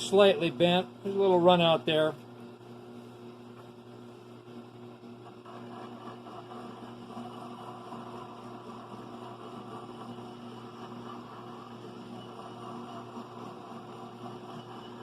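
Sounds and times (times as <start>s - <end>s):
small electric motor humming: 4.5s - 15.0s.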